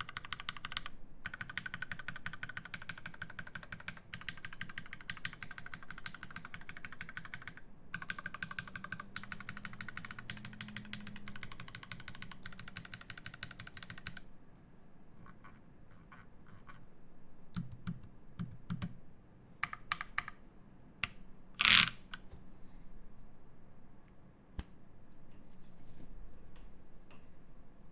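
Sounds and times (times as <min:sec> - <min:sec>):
mechanical keyboard typing: 0:00.0 - 0:14.2.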